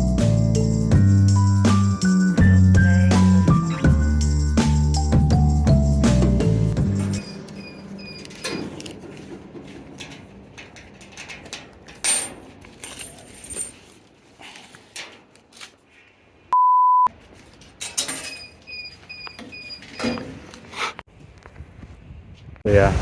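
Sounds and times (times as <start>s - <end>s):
censor bleep tone: 16.5s - 17.1s.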